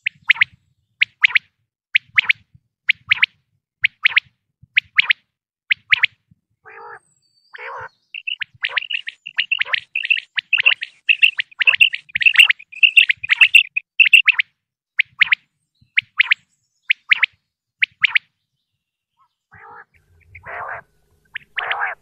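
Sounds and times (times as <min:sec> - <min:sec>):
quail calling: 0:05.9 - 0:14.4, 0:19.2 - 0:22.0.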